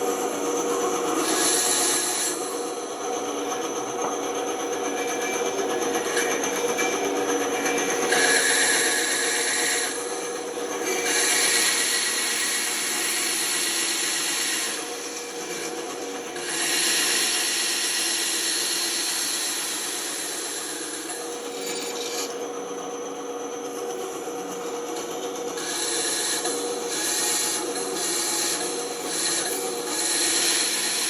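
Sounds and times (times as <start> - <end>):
woodworking power tool motor: 0.0 - 31.0.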